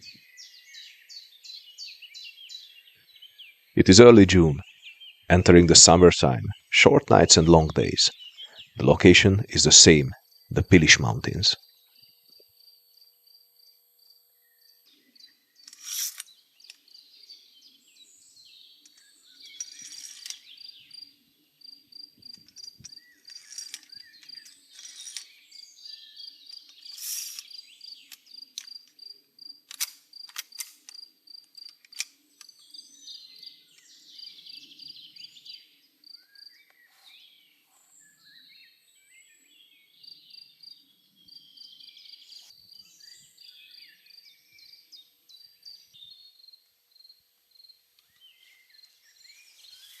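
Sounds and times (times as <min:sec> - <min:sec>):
songbirds singing and chirping: 0:00.0 - 0:50.0
insects chirping: 0:09.6 - 0:36.8, 0:40.0 - 0:50.0.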